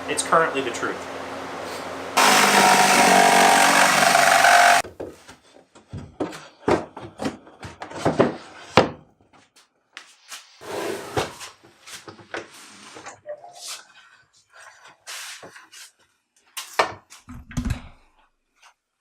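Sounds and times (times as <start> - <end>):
jigsaw cutting wood: 2.2 - 4.8.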